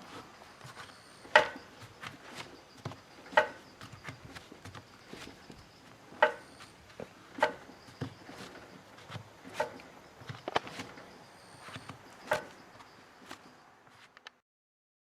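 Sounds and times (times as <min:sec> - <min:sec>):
softer knocks: 0:01.3 - 0:01.7, 0:02.9 - 0:05.6, 0:06.2 - 0:06.5.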